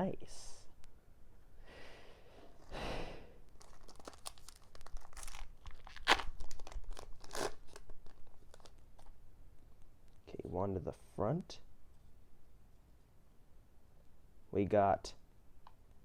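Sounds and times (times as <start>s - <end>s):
foil wrapper tearing and crinkling: 3.5s - 9.1s.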